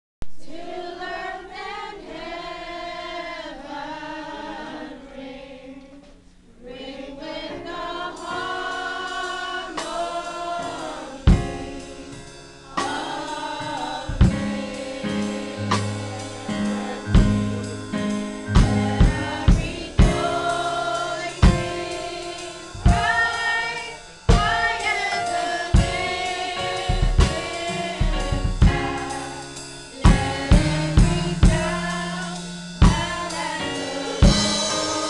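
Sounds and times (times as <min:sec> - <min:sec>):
gospel choir singing: 0:00.4 - 0:35.0
bass line: 0:15.3 - 0:20.7.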